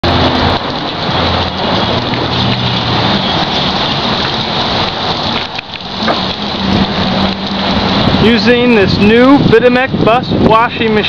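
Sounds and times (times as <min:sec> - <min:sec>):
water spraying on bus body: 0:00.0 - 0:11.0.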